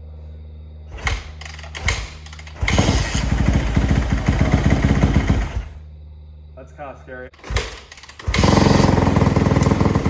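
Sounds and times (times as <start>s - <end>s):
dirt bike engine starting: 0.9s - 5.8s, 7.4s - 10.0s.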